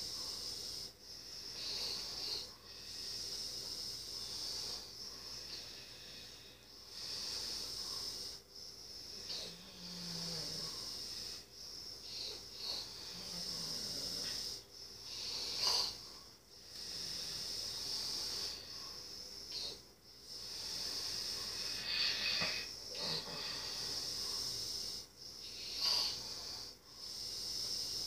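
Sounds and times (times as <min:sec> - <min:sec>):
heavy sleeping breaths: 0:00.0 - 0:28.0.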